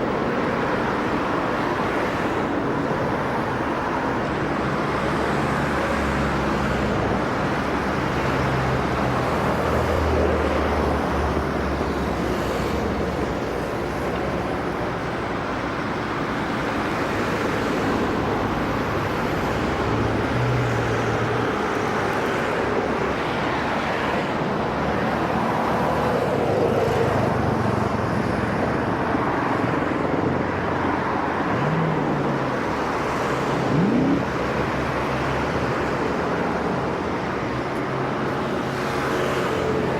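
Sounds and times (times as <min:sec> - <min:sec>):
rushing background noise: 0:00.0 - 0:39.9
low engine hum: 0:27.6 - 0:37.6.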